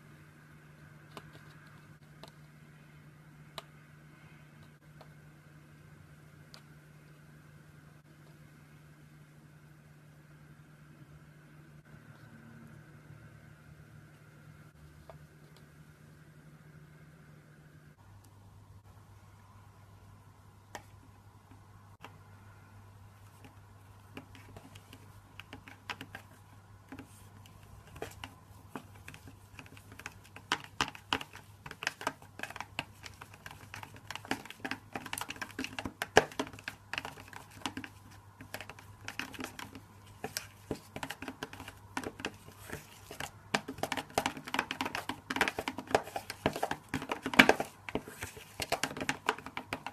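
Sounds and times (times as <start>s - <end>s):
faint low hum: 0.0s - 49.9s.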